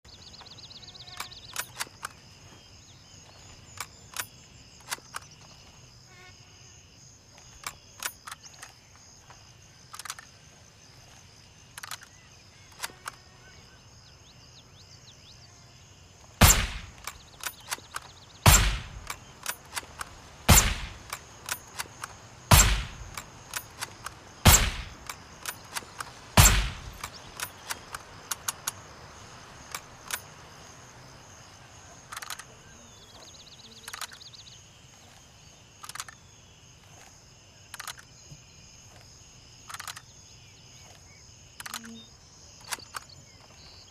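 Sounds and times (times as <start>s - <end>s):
light clicks and ticks: 11.7s - 13.2s, 37.7s - 38.1s, 39.0s - 40.1s, 41.6s - 42.0s
suppressed rifle shots: 16.4s - 28.5s.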